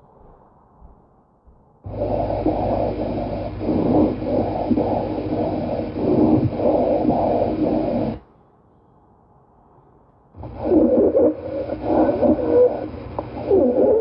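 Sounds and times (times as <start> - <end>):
steady low hum: 1.7 - 8.5, 9.9 - 14.0
breath sounds through stethoscope: 1.9 - 8.3, 10.4 - 14.0.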